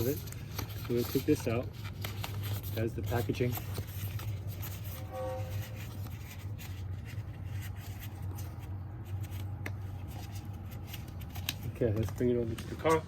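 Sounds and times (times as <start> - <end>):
rubbing and scraping foam packaging: 0.0 - 13.0.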